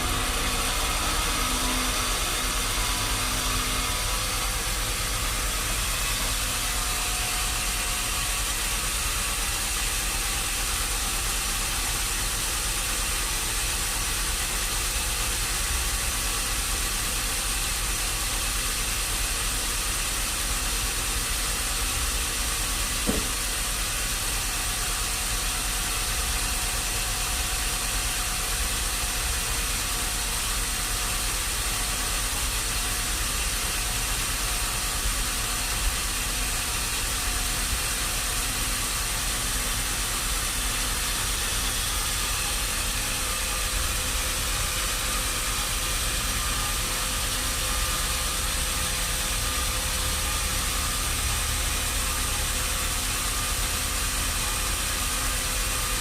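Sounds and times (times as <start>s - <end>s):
machine hissing steadily: 0.0s - 56.0s.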